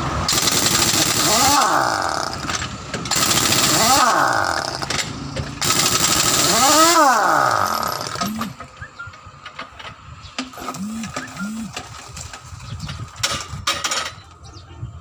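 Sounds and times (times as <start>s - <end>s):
pneumatic impact wrench: 0.2s - 8.7s, 10.4s - 11.8s.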